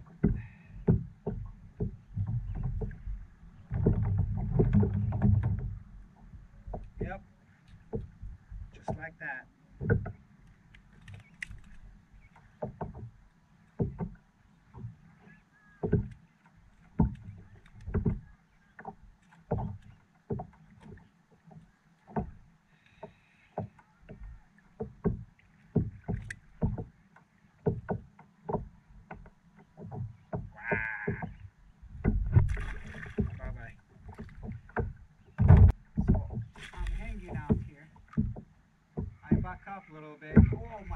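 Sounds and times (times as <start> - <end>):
water slapping boat hull: 0.0 - 40.9
low thumps: 0.1 - 7.2, 27.6 - 40.9.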